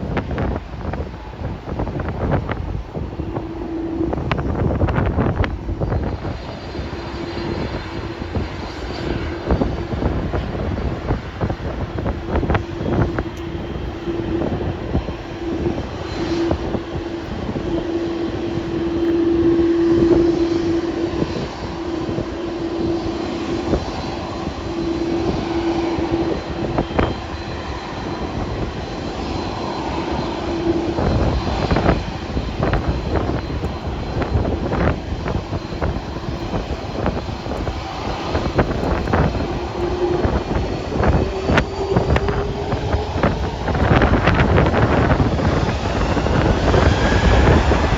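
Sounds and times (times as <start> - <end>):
jet airliner engines running: 0.0 - 47.9
wind knocking on microphone: 31.0 - 47.9.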